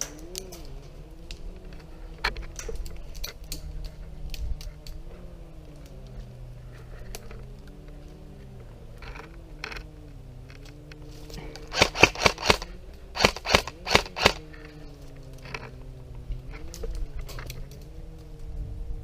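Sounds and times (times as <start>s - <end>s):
airsoft gun shots: 11.7s - 14.4s.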